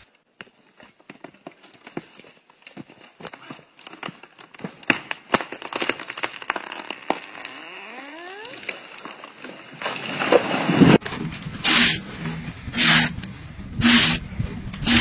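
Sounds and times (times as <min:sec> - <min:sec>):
wood cracking and snapping: 0:01.0 - 0:11.3
short rising creak: 0:06.5 - 0:09.4.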